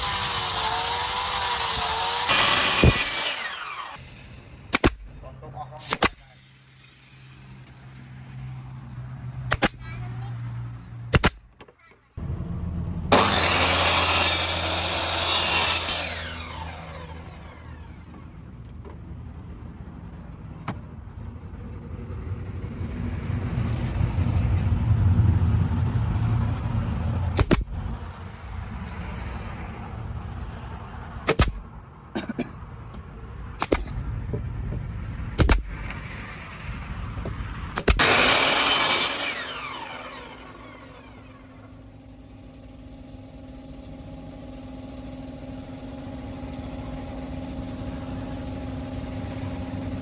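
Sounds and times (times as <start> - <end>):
angle grinder running: 0.0 - 4.7, 13.1 - 18.3, 37.8 - 50.0
low rumble: 12.2 - 13.4, 16.2 - 31.8.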